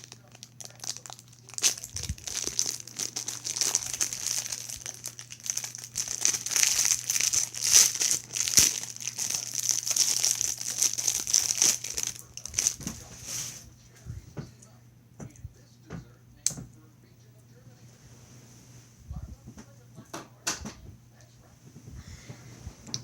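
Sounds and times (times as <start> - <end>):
packaging crinkling and tearing: 0.0 - 13.1.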